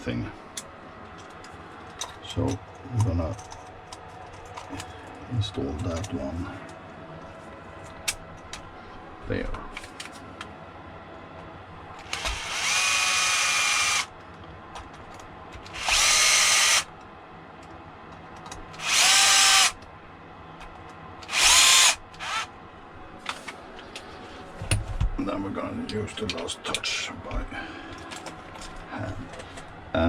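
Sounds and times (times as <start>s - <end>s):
power screwdriver whirring: 12.0s - 14.1s, 15.7s - 16.9s, 18.8s - 19.8s, 21.2s - 22.5s.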